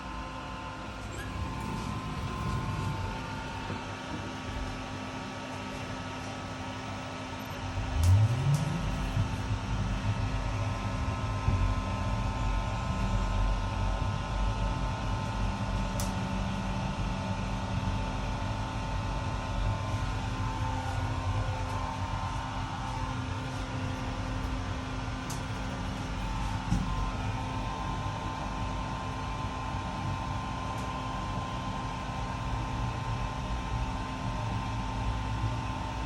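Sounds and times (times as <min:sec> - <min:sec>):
mechanical hum: 0:00.0 - 0:36.0
low rumble: 0:01.0 - 0:04.9, 0:07.6 - 0:14.5.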